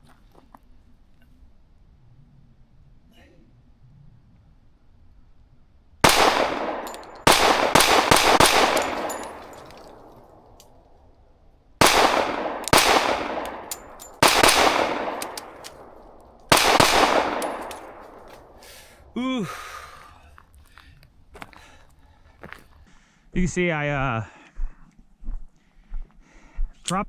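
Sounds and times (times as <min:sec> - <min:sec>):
pistol shots echoing: 0:06.0 - 0:10.9, 0:11.8 - 0:19.1.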